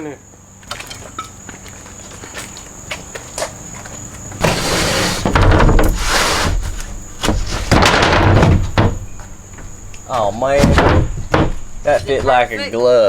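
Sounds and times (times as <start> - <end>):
wood scraping: 3.4 - 13.0
wood knocks and thumps: 4.4 - 12.7.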